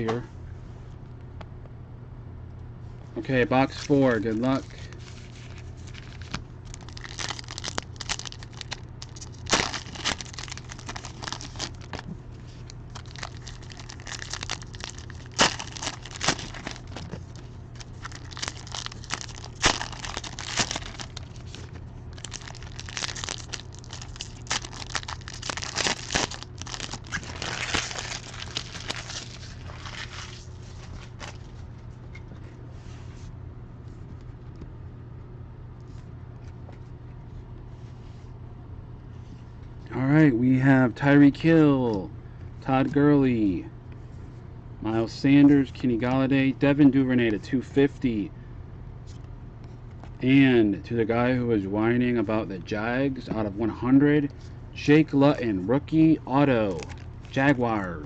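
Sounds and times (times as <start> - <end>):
steady low hum: 0.0 - 58.0
wrappers torn and crinkled: 4.5 - 31.6, 56.7 - 57.4.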